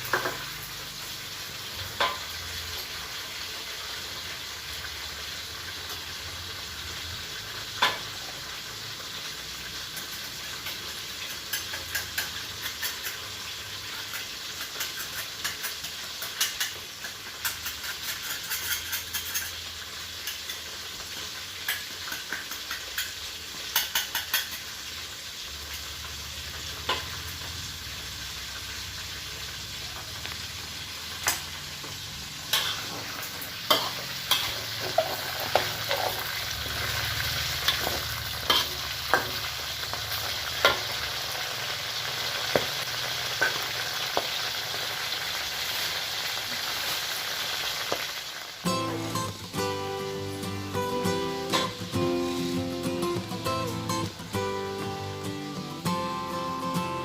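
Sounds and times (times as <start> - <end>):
food sizzling in oil: 0.0 - 57.0
utensil clicking on pan: 9.9 - 20.7, 21.6 - 24.8, 31.2 - 41.2.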